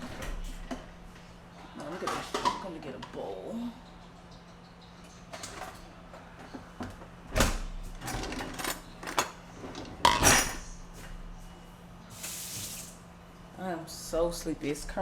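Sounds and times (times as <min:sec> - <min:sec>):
cabinet door and dish clattering: 0:07.3 - 0:10.7.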